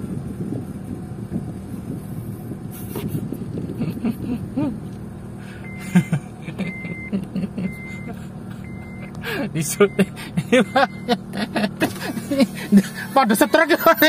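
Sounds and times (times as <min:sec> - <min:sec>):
vehicle engine running: 0:00.0 - 0:14.0
reversing warning beeper: 0:05.6 - 0:05.9, 0:06.6 - 0:11.2.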